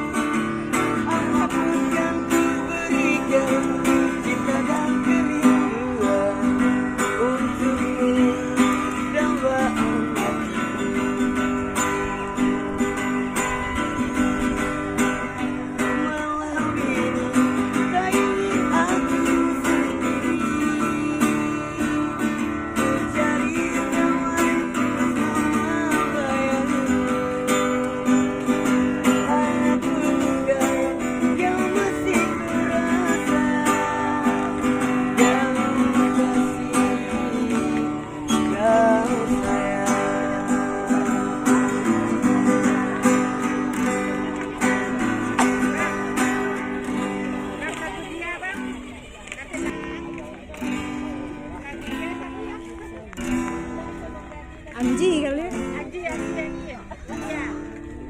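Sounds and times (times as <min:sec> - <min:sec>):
acoustic guitar strumming: 0:00.0 - 0:58.0.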